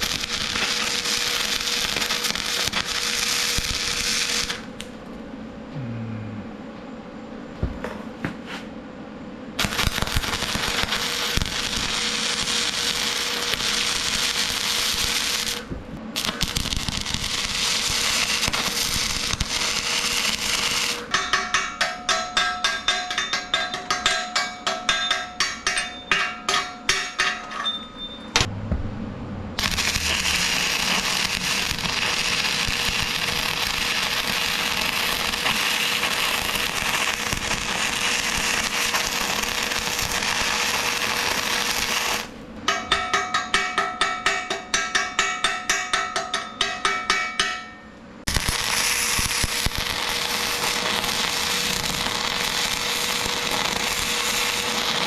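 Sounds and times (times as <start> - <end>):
arc welding crackling hiss: 0.0 - 4.9, 9.6 - 21.6, 29.6 - 42.4, 48.3 - 55.0
hammer strikes on steel: 21.1 - 28.8, 42.6 - 47.9.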